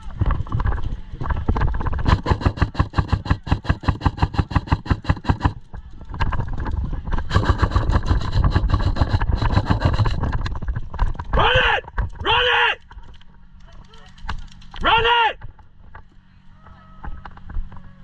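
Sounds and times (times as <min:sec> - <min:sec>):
airsoft gun rapid fire: 0:02.0 - 0:05.7, 0:07.3 - 0:10.2.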